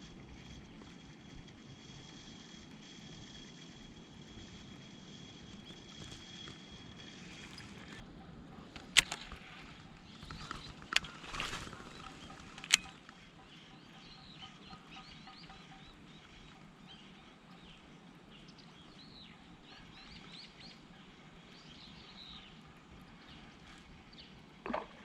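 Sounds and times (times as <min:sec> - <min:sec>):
outdoor background noise: 0:00.0 - 0:25.0
sharp clicks: 0:08.7 - 0:13.2
faint bird chirps: 0:09.4 - 0:24.4.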